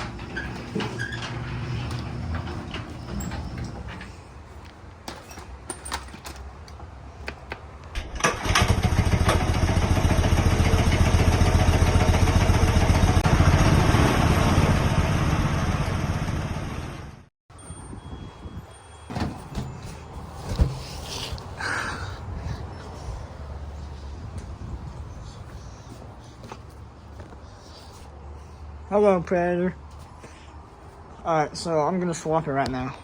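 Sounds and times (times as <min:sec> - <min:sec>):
small engine running: 0:08.4 - 0:17.2.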